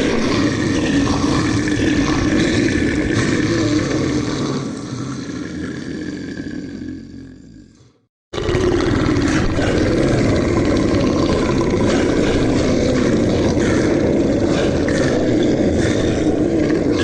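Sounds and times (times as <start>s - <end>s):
low monster growl: 0.0s - 17.0s.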